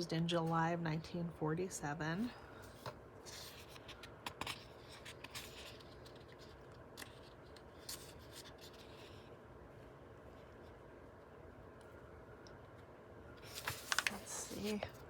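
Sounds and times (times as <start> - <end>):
paper rustling: 2.6 - 9.2, 13.4 - 15.0
book page handling clicks: 13.5 - 15.0.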